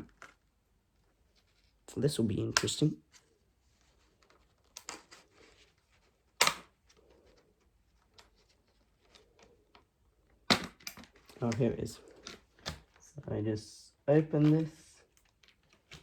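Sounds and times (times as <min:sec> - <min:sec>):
sharp plastic click: 0:06.4 - 0:06.7.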